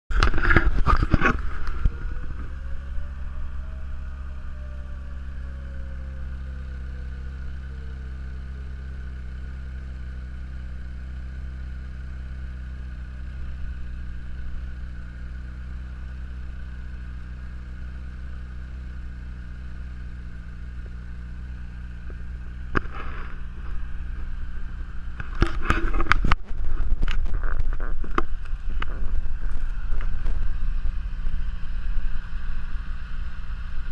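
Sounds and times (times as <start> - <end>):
vehicle engine hum: 0.0 - 33.9
faint rising and falling tone: 0.3 - 8.7.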